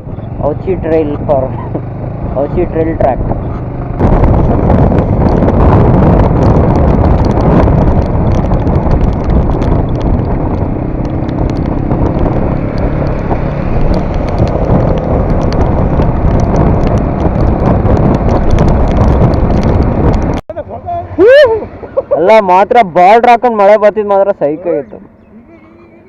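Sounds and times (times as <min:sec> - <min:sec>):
motorcycle engine running: 0:00.0 - 0:22.2
wind rush on microphone: 0:00.0 - 0:26.0
sharp ticks: 0:06.6 - 0:20.4.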